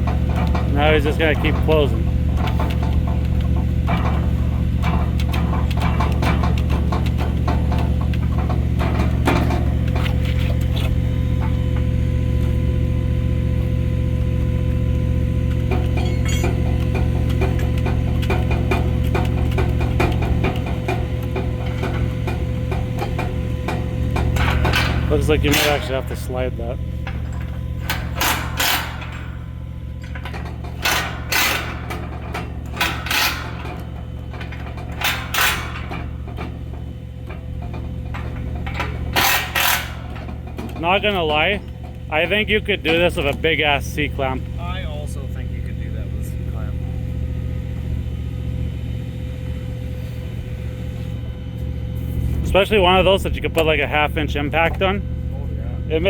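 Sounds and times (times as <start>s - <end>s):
hydraulic tool mechanical clacks: 0.0s - 11.9s, 15.5s - 44.5s
low machine hum: 0.0s - 56.0s
light metallic clinks: 15.9s - 16.6s.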